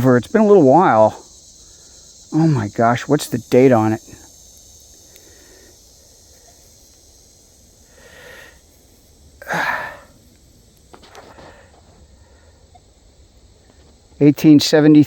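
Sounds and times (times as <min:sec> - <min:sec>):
crickets chirping: 0:00.0 - 0:15.0
person puffing breaths of air: 0:09.4 - 0:10.2, 0:11.0 - 0:12.6.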